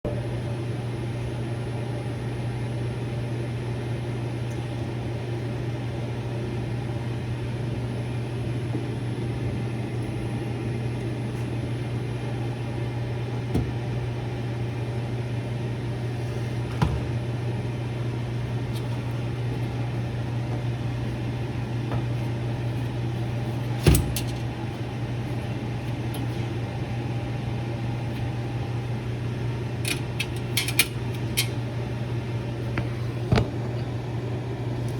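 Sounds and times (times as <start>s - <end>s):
low mechanical hum: 0.1s - 34.9s.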